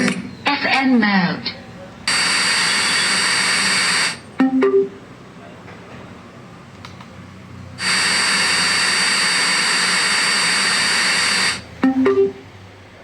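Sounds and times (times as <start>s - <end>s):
radio static hiss: 0.0s - 4.4s, 7.8s - 12.0s.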